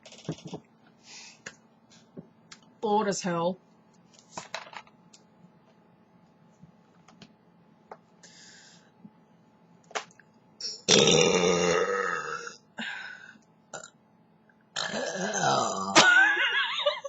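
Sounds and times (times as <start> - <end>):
man belching: 10.6 - 12.6, 14.8 - 16.0.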